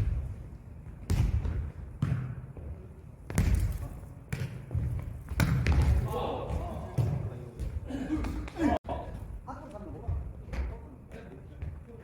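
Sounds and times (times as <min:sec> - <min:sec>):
ball thudding on gym floor: 0:03.3 - 0:08.4.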